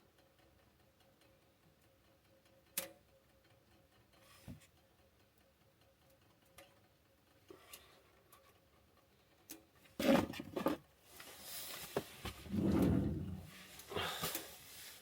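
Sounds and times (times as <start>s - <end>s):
sharp clicks and ticks: 0.0s - 4.2s, 4.8s - 9.7s.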